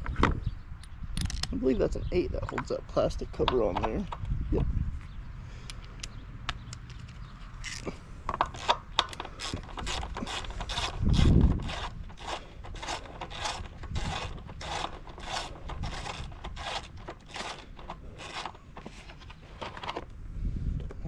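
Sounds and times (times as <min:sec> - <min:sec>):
ratchet wrench ratcheting: 0:06.9 - 0:18.6.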